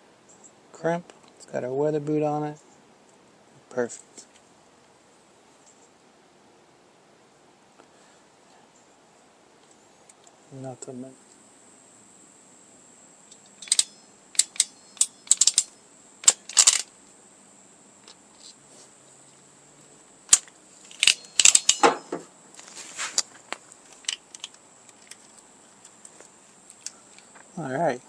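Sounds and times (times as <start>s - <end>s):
crimping tool clicking: 13.3s - 16.9s, 20.3s - 22.0s.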